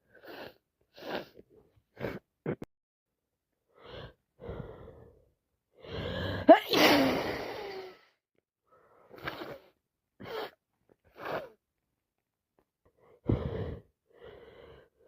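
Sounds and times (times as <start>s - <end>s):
woman sneezing: 6.5s - 7.9s.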